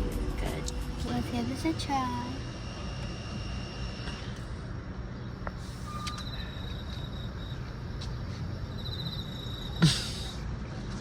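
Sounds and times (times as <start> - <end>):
faint high chirping trills: 5.2 - 9.8.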